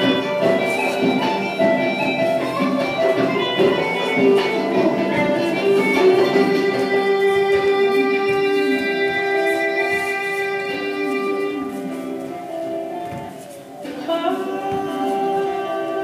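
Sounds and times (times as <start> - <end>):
plucked guitar notes: 0.0 - 16.0.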